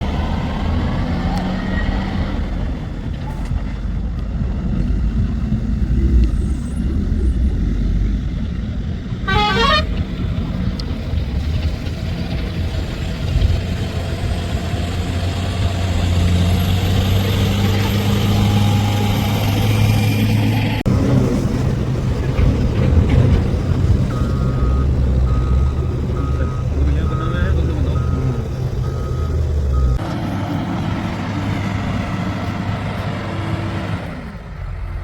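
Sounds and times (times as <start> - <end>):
heavy diesel engine running: 8.2 - 35.0
short high-pitched squeal: 9.3 - 9.9.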